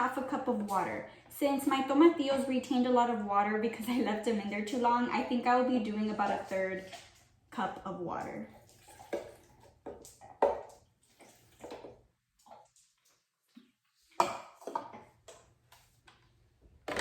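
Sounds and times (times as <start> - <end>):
dishes and containers clinking: 8.5 - 12.8, 14.1 - 15.4.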